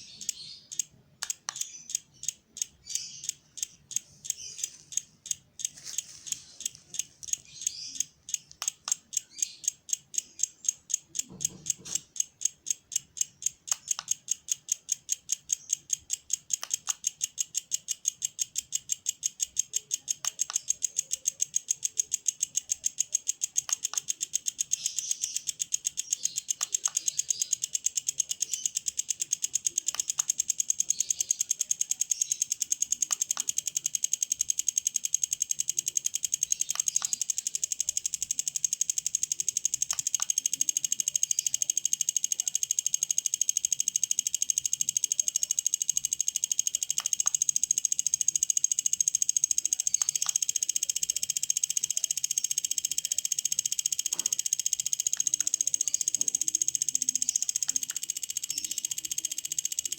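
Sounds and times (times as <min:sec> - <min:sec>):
welding machine clicking: 0:00.0 - 0:59.9.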